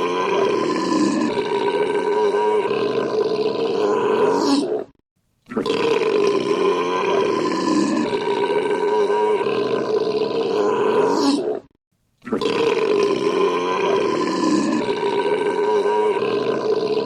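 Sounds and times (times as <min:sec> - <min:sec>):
long loud belch: 0:00.0 - 0:04.7, 0:05.5 - 0:17.0.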